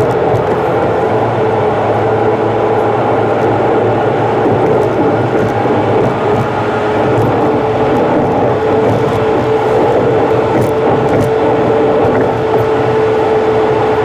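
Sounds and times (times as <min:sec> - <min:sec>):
car road and engine noise: 0:00.0 - 0:14.0.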